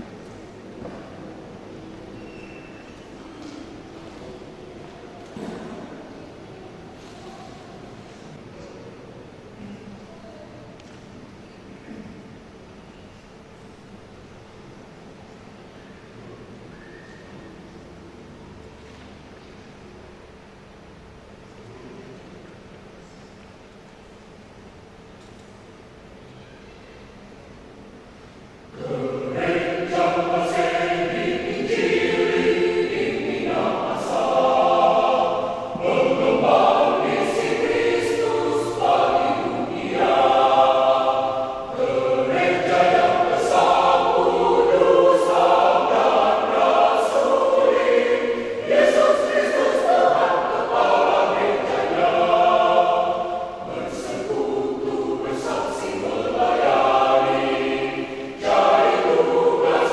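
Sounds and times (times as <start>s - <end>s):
choir singing a hymn: 5.2s - 8.4s, 28.7s - 59.9s.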